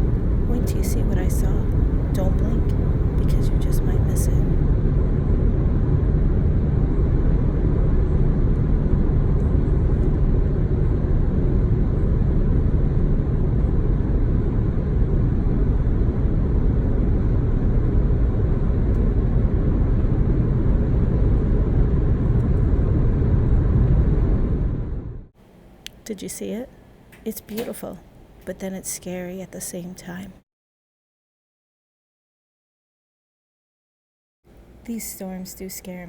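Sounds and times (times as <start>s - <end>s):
car road and wind noise: 0.0s - 12.1s.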